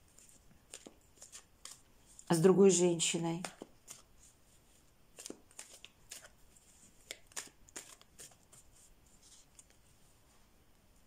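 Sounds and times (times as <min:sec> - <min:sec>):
cards flicking and rustling: 0:00.1 - 0:02.2, 0:03.1 - 0:04.4, 0:05.1 - 0:09.8.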